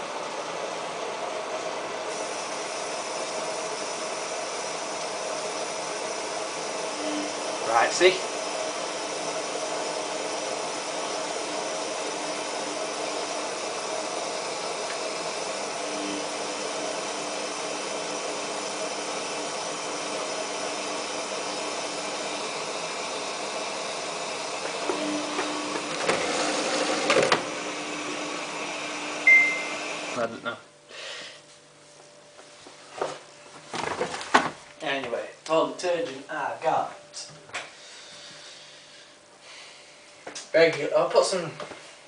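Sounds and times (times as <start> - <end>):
water rushing into washing machine: 2.1 - 30.2.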